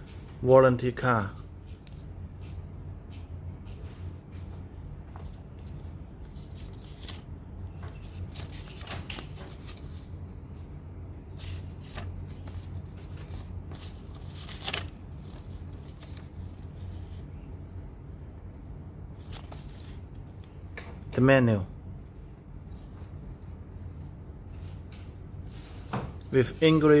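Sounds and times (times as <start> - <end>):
paper rustling: 5.1 - 10.2, 11.3 - 17.2, 19.2 - 20.1.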